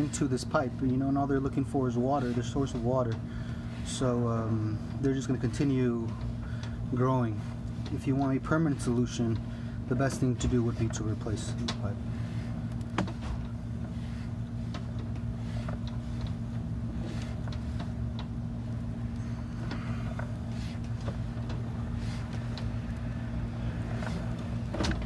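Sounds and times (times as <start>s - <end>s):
inspection camera rig humming: 0.0s - 25.0s
light clicks and taps: 7.6s - 12.0s.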